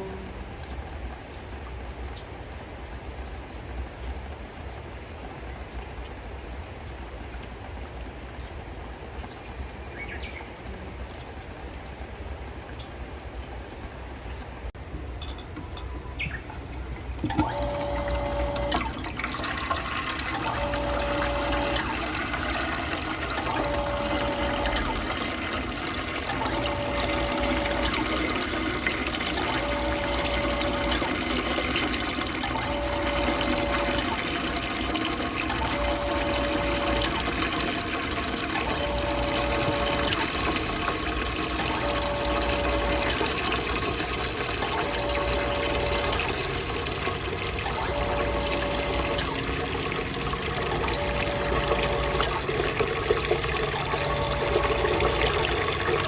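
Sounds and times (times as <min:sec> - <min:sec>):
water pump running: 0:00.0 - 0:09.9, 0:10.5 - 0:56.0
short tone: 0:17.3 - 0:18.9, 0:20.3 - 0:38.0, 0:38.6 - 0:40.5, 0:41.6 - 0:44.0, 0:44.6 - 0:49.6, 0:50.7 - 0:52.6, 0:53.8 - 0:55.8.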